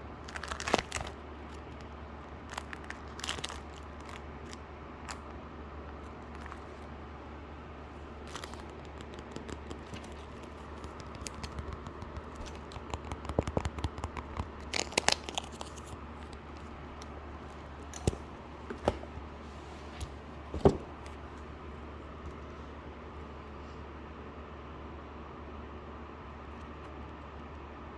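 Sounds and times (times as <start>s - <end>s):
packaging crinkling and tearing: 0.0s - 7.1s, 8.0s - 21.4s.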